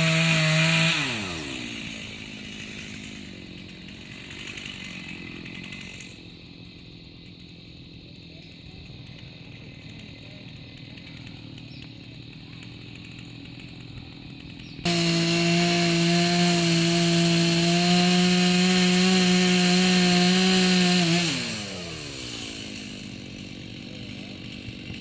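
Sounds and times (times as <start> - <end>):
chainsaw revving: 0.0 - 25.0.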